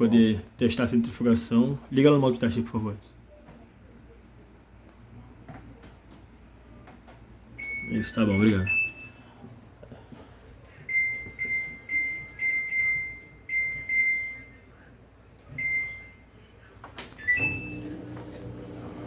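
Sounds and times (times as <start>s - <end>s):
washing machine motor humming: 17.0s - 19.0s.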